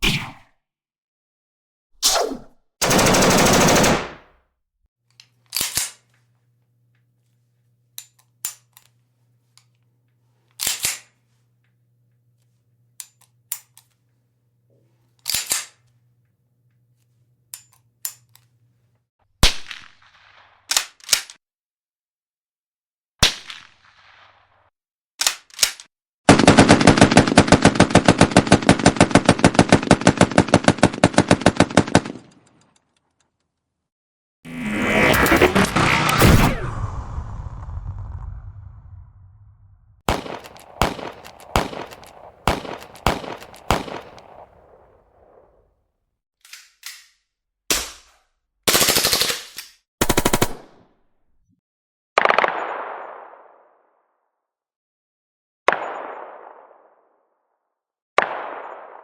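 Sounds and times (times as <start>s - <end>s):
gunshots and bursts: 2.0s - 4.4s, 23.2s - 24.6s, 25.2s - 32.7s, 34.5s - 38.5s, 39.2s - 45.6s, 47.7s - 51.0s, 52.2s - 53.9s, 55.7s - 57.2s, 58.2s - 59.0s
rapid automatic gunfire: 2.8s - 4.3s, 26.3s - 32.3s, 40.1s - 44.9s, 48.7s - 50.8s.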